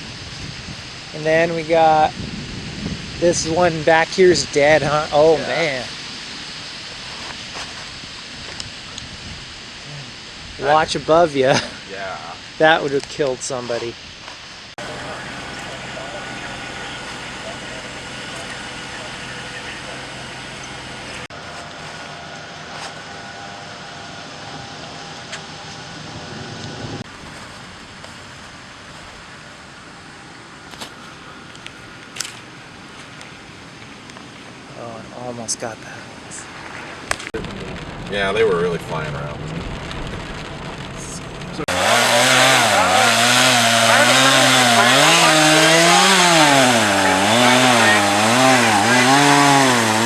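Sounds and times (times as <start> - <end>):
steady hiss: 0.0 - 21.9
vehicle road and engine noise: 14.6 - 37.8, 40.5 - 50.0
chainsaw cutting wood: 14.8 - 23.2, 41.6 - 50.0.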